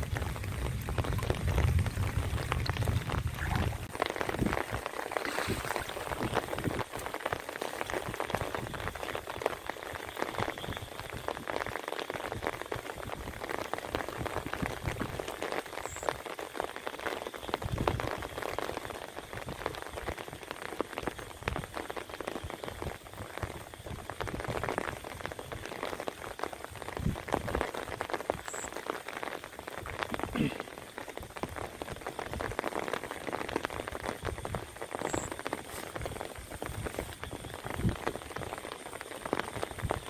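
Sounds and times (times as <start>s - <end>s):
rain pattering: 0.0s - 40.0s.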